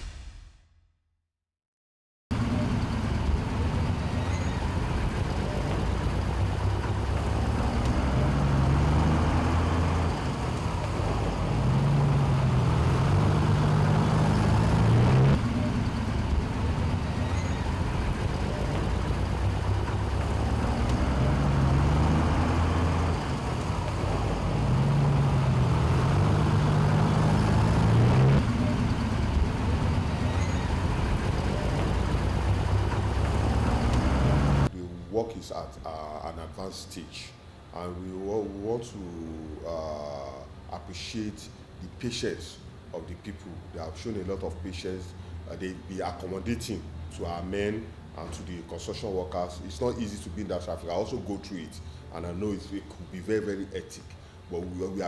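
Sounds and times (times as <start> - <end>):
heavy vehicle engine revving: 2.3 - 34.7
road traffic: 2.3 - 55.0.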